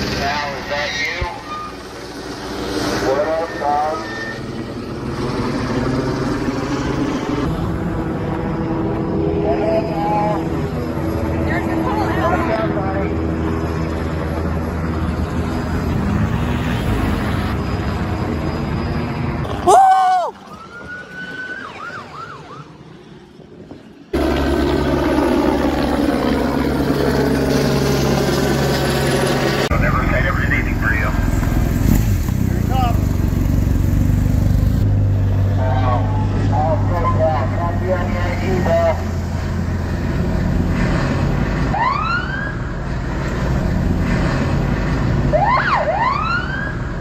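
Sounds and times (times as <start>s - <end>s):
vehicle engine and road noise: 0.0s - 47.0s
police siren chirps: 19.6s - 22.9s, 41.8s - 42.7s, 45.3s - 47.0s
steady rumbling noise: 23.1s - 41.8s.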